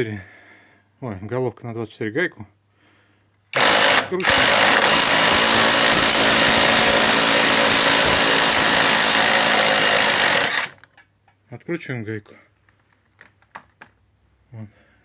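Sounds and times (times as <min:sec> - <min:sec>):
power tool running: 0:03.6 - 0:10.9.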